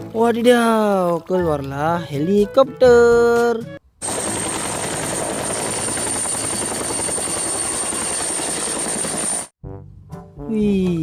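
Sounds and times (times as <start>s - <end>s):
helicopter rotor chop: 4.0s - 9.5s.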